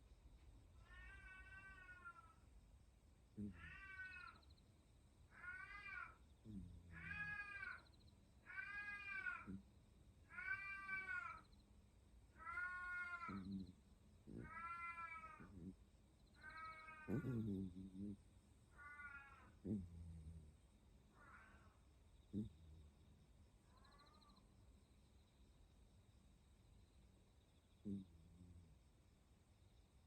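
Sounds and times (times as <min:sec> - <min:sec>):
cat yowling: 0:00.8 - 0:02.4, 0:03.4 - 0:04.4, 0:05.3 - 0:07.8, 0:08.5 - 0:09.6, 0:10.3 - 0:11.4, 0:12.4 - 0:13.7, 0:14.3 - 0:15.7, 0:16.4 - 0:17.7, 0:18.8 - 0:20.5, 0:21.2 - 0:21.8.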